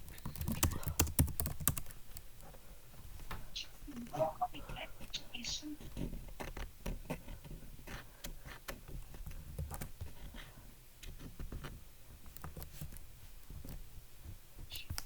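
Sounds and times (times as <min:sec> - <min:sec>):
low steady hum: 0:03.4 - 0:05.9.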